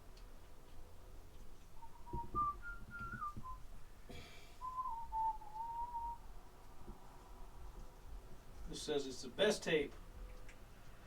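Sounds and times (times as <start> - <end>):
person whistling: 1.8 - 3.6, 4.6 - 6.2
low knocks: 2.0 - 3.6.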